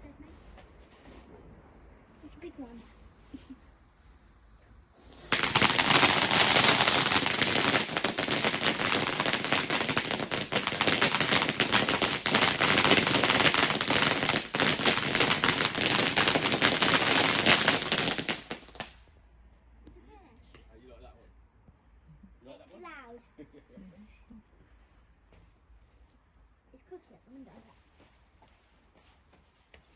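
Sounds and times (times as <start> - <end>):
firework hiss: 2.2 - 19.0
firework crackling and popping: 2.2 - 19.1.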